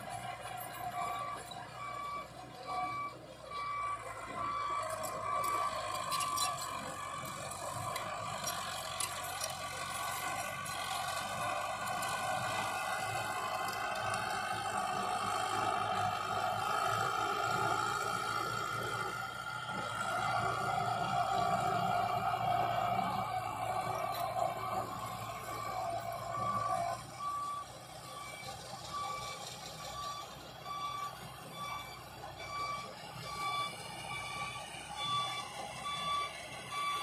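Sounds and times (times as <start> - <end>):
diesel engine running: 0.0 - 37.0
reversing alarm beeps: 0.9 - 7.0, 20.3 - 37.0.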